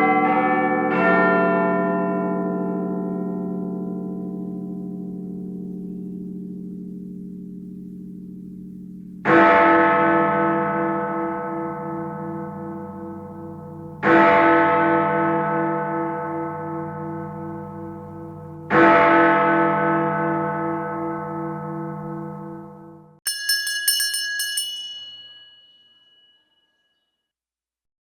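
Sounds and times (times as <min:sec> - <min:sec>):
large bell ringing: 0:09.3 - 0:26.6.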